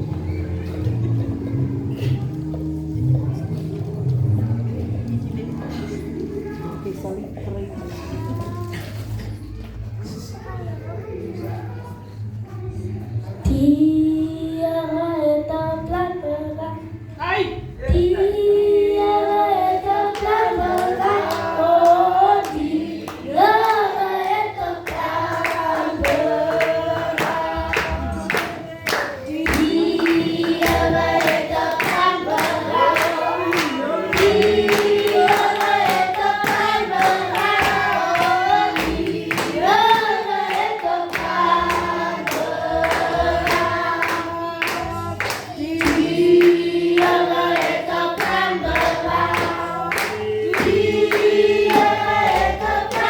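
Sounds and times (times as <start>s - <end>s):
group singing a church song: 17.9s - 53.0s
hands clapping in time: 24.9s - 53.0s.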